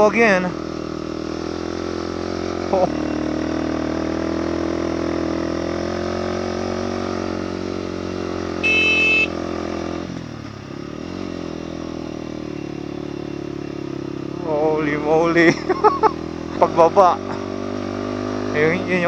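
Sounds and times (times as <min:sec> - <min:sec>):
motorcycle engine pulling under load: 0:00.0 - 0:19.0
motorcycle horn honk: 0:08.5 - 0:09.8.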